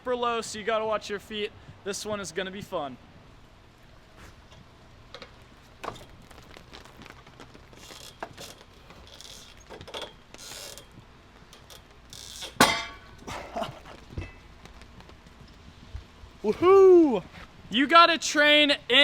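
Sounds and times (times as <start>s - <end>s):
short hissy rustles: 3.8s - 4.8s
metallic clicks and creaks of rings: 4.5s - 13.3s.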